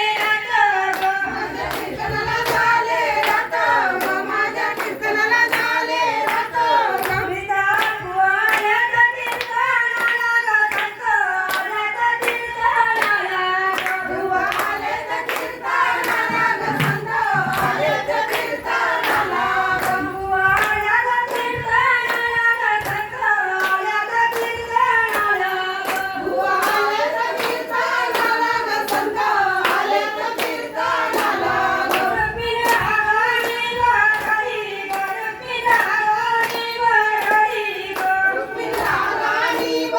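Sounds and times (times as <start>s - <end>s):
hand claps: 0.0s - 39.9s
woman singing devotional song: 0.0s - 39.9s.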